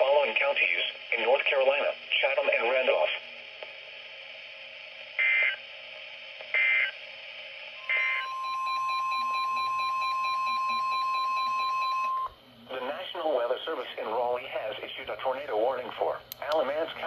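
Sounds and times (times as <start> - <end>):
digital data tone bursts: 7.8 - 12.3
steady warning alarm tone: 7.8 - 12.4.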